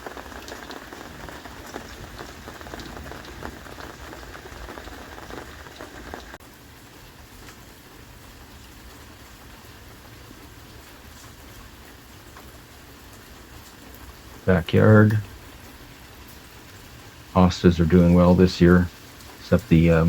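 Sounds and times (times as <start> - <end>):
water dripping: 0.0 - 6.4
light rain hiss: 0.0 - 20.0
rain pattering: 0.0 - 20.0.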